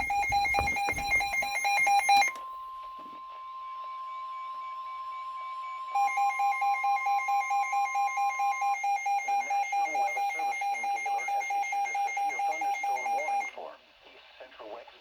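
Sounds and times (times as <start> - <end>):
steady warning alert tone: 0.0 - 1.6
rapid electronic alarm beeps: 0.0 - 2.3, 3.5 - 13.6
faint broadcast speech: 9.2 - 15.0.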